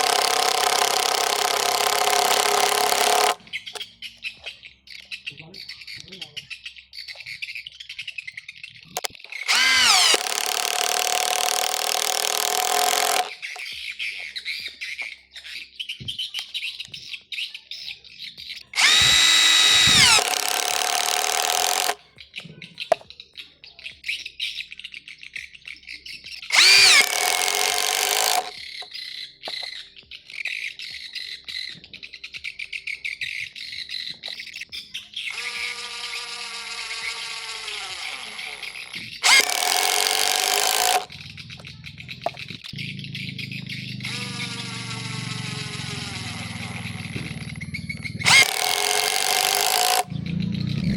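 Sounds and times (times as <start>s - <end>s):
cordless impact driver running: 0.0s - 3.5s, 9.5s - 13.6s, 18.8s - 22.0s, 26.5s - 28.6s, 35.3s - 41.6s, 43.6s - 50.9s
birds chirping: 33.5s - 50.9s.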